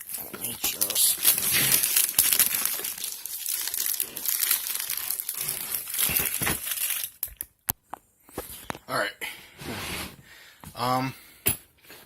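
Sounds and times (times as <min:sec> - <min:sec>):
plastic film crinkling: 0:00.0 - 0:07.5.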